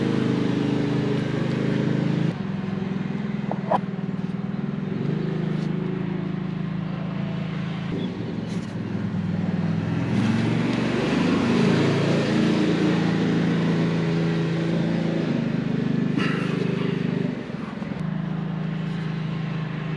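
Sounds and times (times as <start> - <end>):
truck engine running: 0.0 - 10.7.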